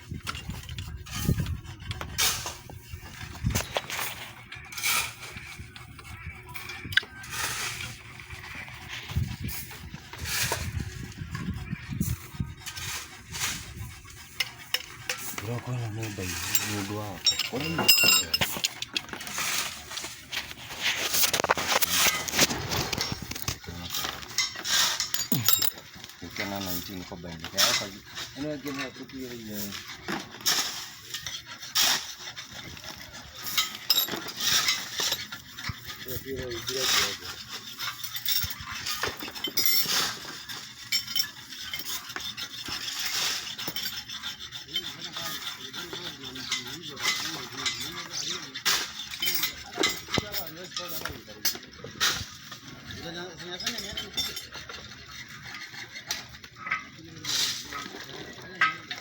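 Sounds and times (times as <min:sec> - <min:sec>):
metal tools clinking: 0:12.6 - 0:59.0.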